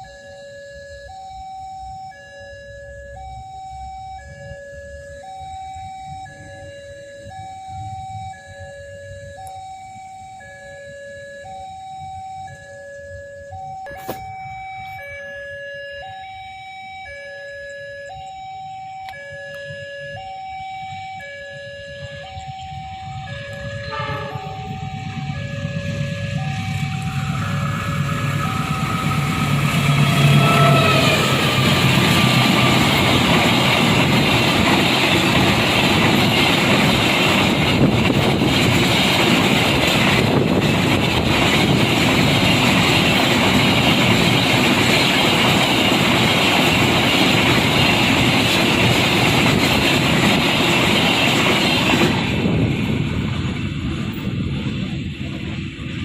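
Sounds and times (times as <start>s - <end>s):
train rolling on rails: 0.0s - 56.0s
train horn: 23.0s - 33.4s.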